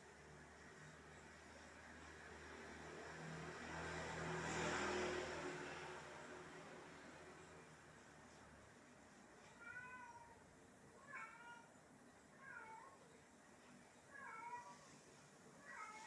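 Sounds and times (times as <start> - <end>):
cat meowing: 9.5 - 10.4, 11.0 - 11.7.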